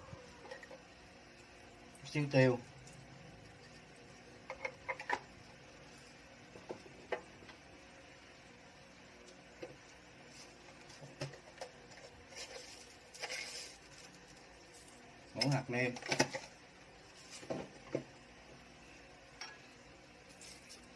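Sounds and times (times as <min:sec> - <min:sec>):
kitchen utensils clicking and tapping: 0:04.4 - 0:05.3.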